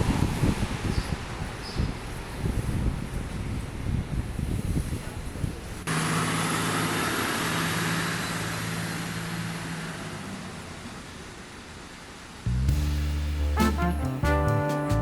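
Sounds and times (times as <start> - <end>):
wind rumbling on microphone: 0.0 - 5.9
vehicle engine hum: 5.9 - 13.5.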